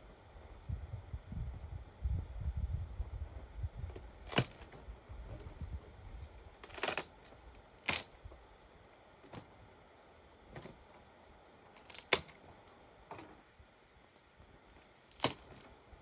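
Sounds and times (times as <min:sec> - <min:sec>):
sharp short cracks: 0:04.2 - 0:04.7, 0:06.6 - 0:08.2, 0:11.8 - 0:12.4, 0:15.0 - 0:15.6.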